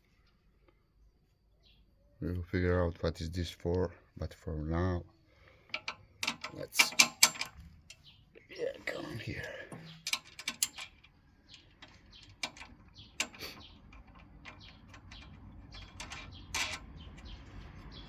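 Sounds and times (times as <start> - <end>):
plastic and metal parts clicking: 5.7 - 8.1, 9.7 - 17.6.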